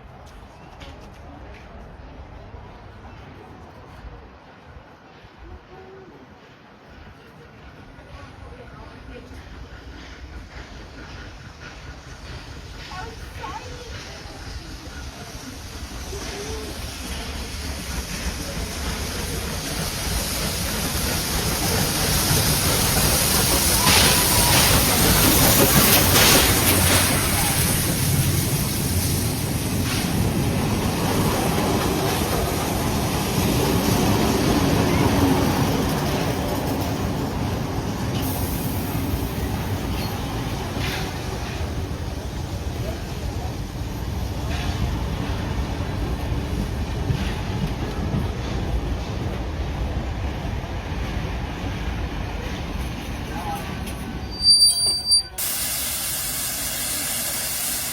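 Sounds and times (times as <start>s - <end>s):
passenger train rumbling on rails: 0.0s - 57.9s
wheels clicking over track: 16.2s - 29.2s.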